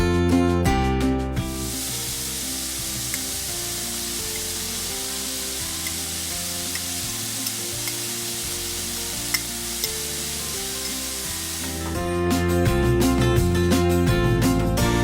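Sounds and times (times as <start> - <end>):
soft background music: 0.1 - 15.0
food sizzling in a frying pan: 1.5 - 13.2
utensil clicking against pan: 3.0 - 12.0.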